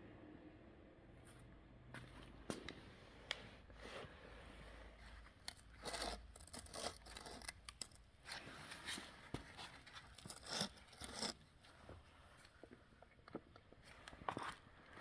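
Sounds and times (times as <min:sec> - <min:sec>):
scrapes and rustles: 0:03.6 - 0:15.0.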